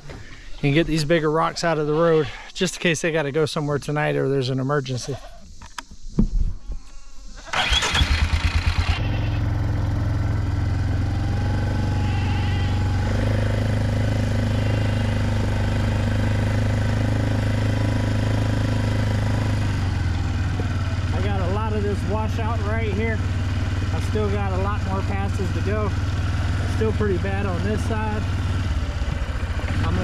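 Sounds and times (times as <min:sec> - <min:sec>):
atv engine cranking: 0:07.4 - 0:30.0
atv engine running: 0:07.5 - 0:30.0.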